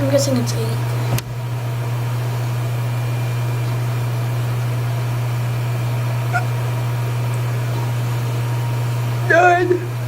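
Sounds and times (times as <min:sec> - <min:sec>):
steady low hum: 0:00.0 - 0:10.0
person hiccuping: 0:06.3 - 0:06.6.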